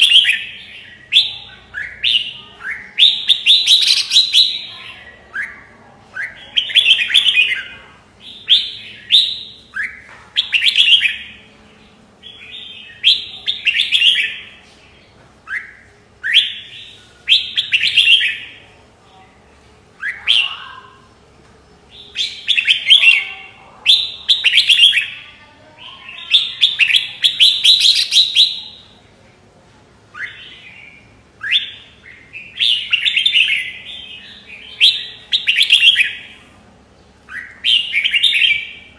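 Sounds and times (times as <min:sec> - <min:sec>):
bulbul singing warbling phrases: 0:00.0 - 0:14.6, 0:20.0 - 0:21.2, 0:21.9 - 0:29.0, 0:30.1 - 0:36.5, 0:37.1 - 0:38.9.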